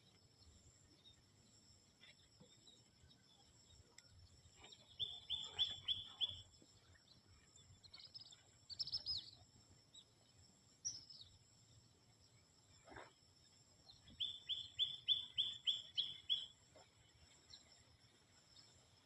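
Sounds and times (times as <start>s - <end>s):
birds chirping: 4.6s - 7.2s, 13.9s - 16.9s.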